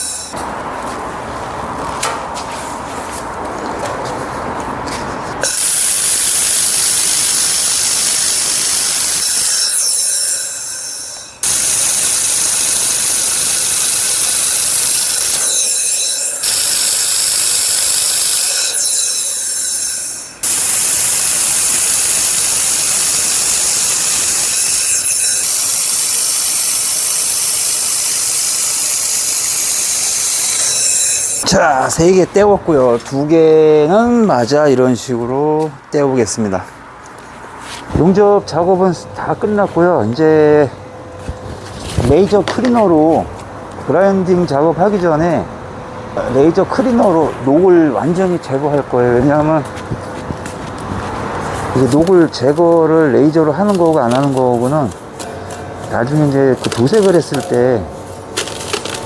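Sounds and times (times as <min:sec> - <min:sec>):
laser welder hissing: 0:05.4 - 0:09.6, 0:11.4 - 0:15.6, 0:16.4 - 0:18.7, 0:20.4 - 0:31.4.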